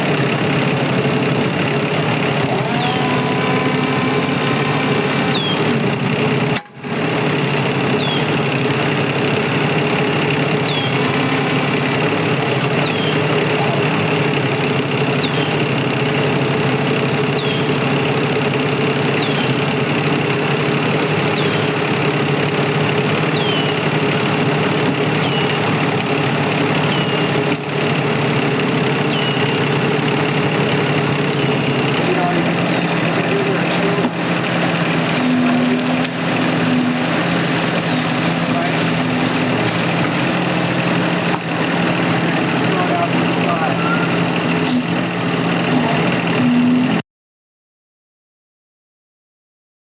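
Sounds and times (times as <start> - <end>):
excavator engine running: 0.0 - 47.0
high falling chirp: 10.6 - 11.0, 12.7 - 13.2, 17.3 - 17.8, 21.3 - 21.8, 23.3 - 23.8, 29.1 - 29.6.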